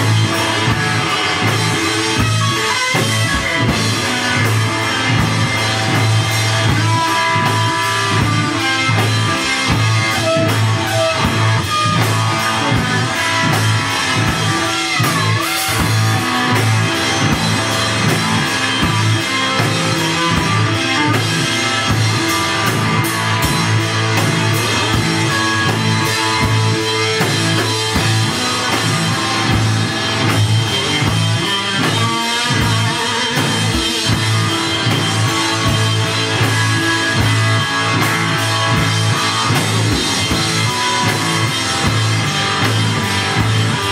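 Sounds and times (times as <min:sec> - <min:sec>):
busy drum kit: 0:00.0 - 0:43.9
guitar: 0:00.0 - 0:43.9.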